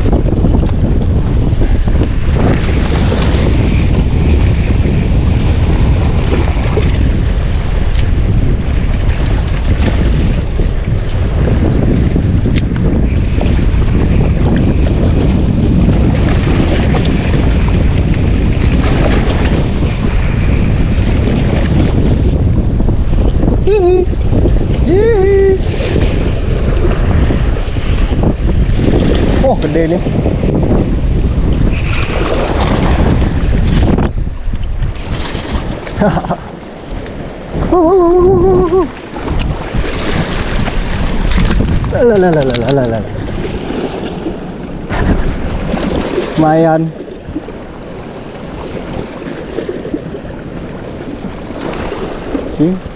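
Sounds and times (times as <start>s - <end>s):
sea waves: 0.0s - 52.9s
shore surf: 0.0s - 52.9s
wind buffeting microphone: 0.0s - 52.9s
person humming: 23.6s - 24.2s, 24.8s - 25.7s, 37.6s - 39.0s.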